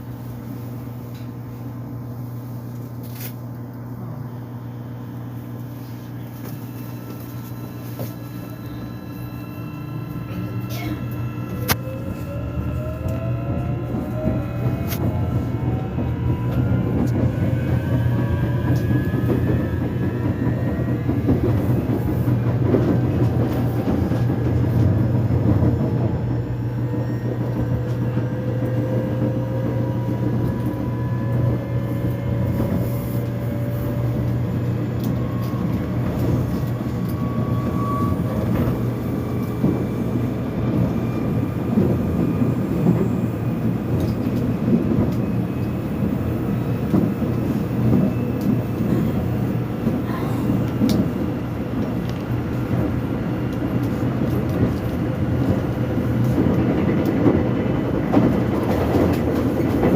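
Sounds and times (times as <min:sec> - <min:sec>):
wheels rumbling on track: 0:05.2 - 0:59.9
train motor whine: 0:06.3 - 0:49.8.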